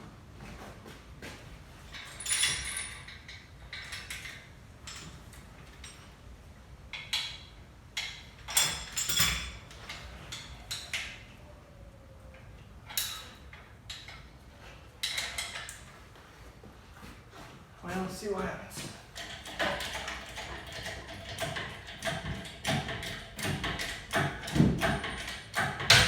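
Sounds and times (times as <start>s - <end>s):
metal chain clinking and rattling: 1.8s - 6.2s, 6.9s - 11.2s, 19.1s - 26.0s.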